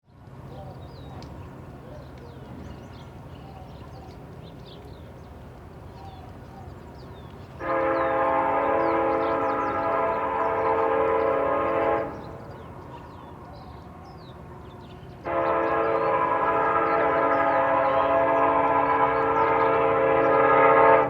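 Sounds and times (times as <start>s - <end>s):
train air horn blast: 7.6s - 12.5s, 15.2s - 21.0s.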